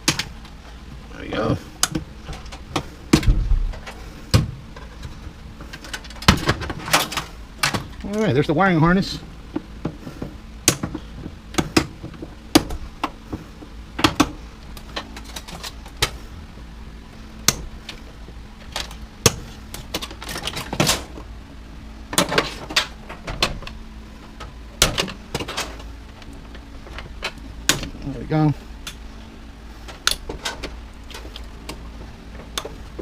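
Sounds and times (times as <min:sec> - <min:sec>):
metal and plastic parts rattling: 0:01.8 - 0:08.4, 0:14.0 - 0:16.2, 0:18.6 - 0:21.2, 0:22.1 - 0:23.8, 0:24.4 - 0:28.2, 0:29.8 - 0:33.0.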